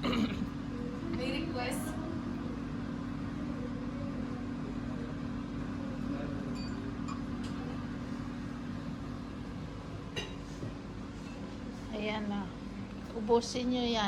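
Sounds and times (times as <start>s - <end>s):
ventilation hum: 0.0s - 14.0s
tableware clinking: 10.1s - 10.5s.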